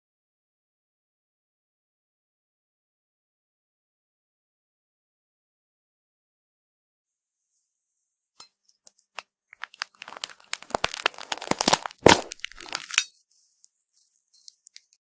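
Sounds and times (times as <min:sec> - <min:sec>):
brittle material crackling and snapping: 0:09.1 - 0:15.0.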